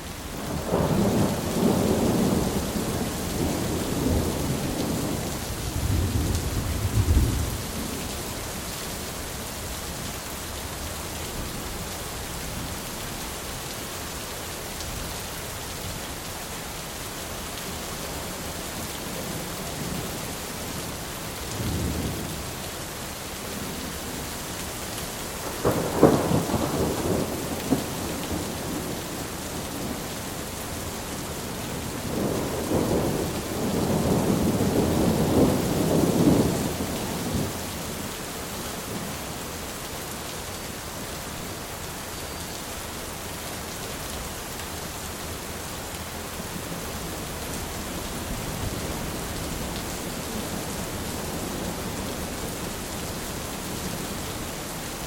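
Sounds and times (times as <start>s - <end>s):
rain hissing: 20.6s - 55.0s.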